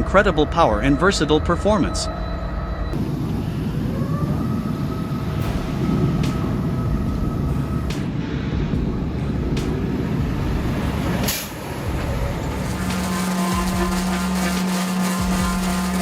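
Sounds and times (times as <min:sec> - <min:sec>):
heavy engine rumbling: 0:00.0 - 0:16.0
steady machine hum: 0:00.0 - 0:16.0.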